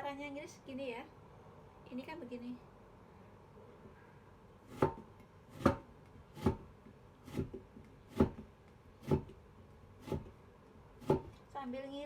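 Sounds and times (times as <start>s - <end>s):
knife slicing lemon: 4.7s - 9.4s, 10.0s - 10.3s.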